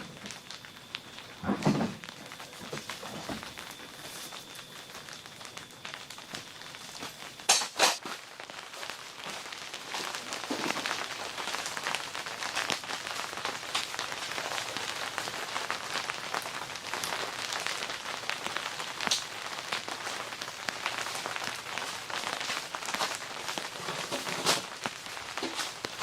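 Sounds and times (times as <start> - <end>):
steady rain: 0.0 - 26.0.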